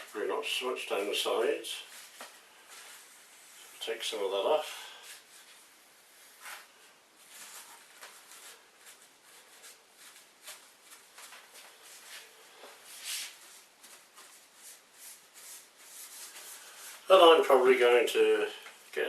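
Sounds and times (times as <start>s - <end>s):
paper towel wiping metal: 12.9s - 17.7s.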